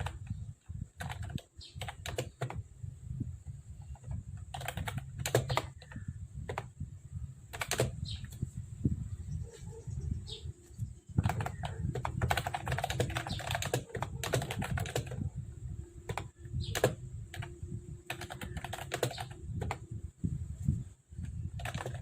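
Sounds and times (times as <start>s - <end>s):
keyboard key clicks: 11.2s - 15.2s.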